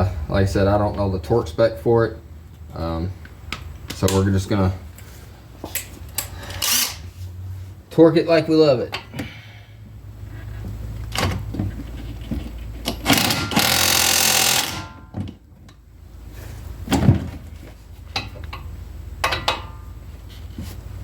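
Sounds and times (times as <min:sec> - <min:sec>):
impact wrench hammering: 0:12.9 - 0:15.2.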